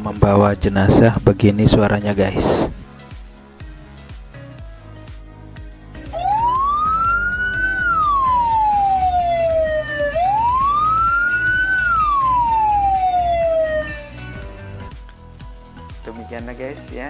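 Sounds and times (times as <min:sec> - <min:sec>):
ambulance siren wailing: 0:06.2 - 0:14.5.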